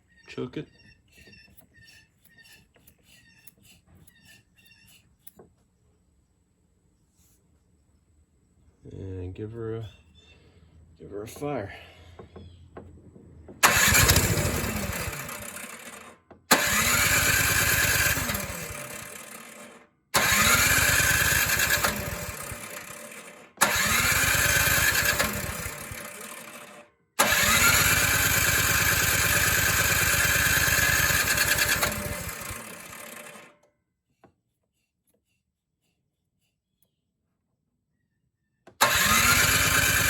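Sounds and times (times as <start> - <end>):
small engine catching and dying: 13.6 - 33.6, 38.8 - 40.0.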